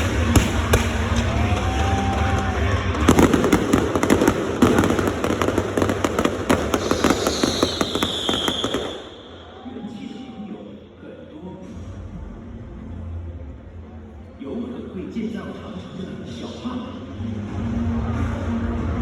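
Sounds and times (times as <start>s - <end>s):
fireworks crackling pops: 0.0s - 9.2s
fireworks low rumble: 0.0s - 9.4s.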